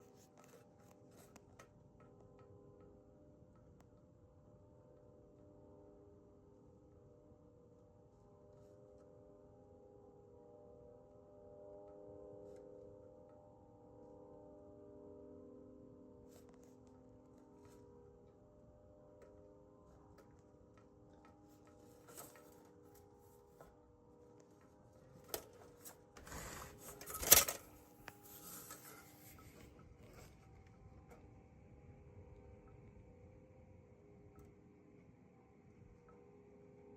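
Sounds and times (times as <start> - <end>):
low mechanical hum: 0.0 - 36.9
scraping rustle: 25.2 - 30.4.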